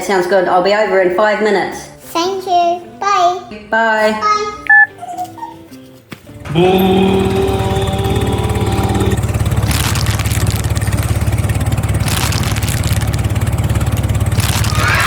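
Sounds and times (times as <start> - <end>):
chord-like horn tone: 6.5 - 9.5
engine running with low pulse: 6.5 - 15.0.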